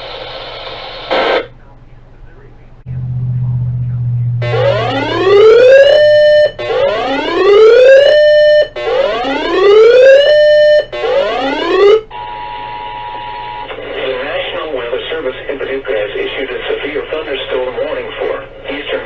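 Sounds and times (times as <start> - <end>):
two-tone alert signal: 2.9 - 12.0
electronic siren whoop tones: 2.9 - 12.3.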